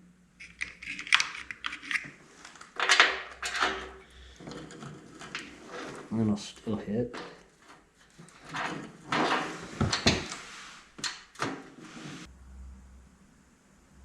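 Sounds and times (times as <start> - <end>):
bolts knocking and rattling: 0.4 - 5.6
faint low hum: 12.3 - 14.0.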